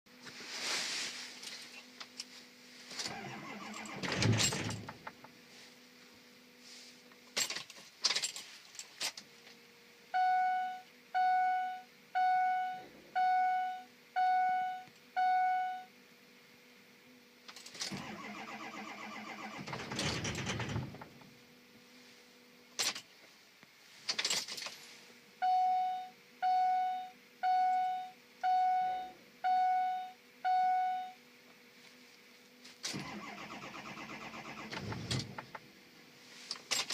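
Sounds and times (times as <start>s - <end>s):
faint steady hum: 0.1s - 36.9s
keys rustling: 7.4s - 9.2s, 24.1s - 25.0s, 36.5s - 36.9s
dashboard warning chime beeping: 10.1s - 15.9s, 25.4s - 31.2s.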